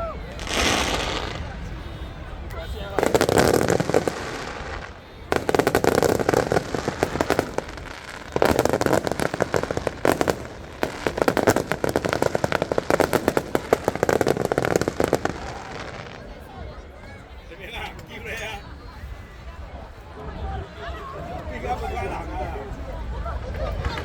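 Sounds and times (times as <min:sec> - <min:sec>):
fireworks crackling bangs: 0:00.0 - 0:16.5.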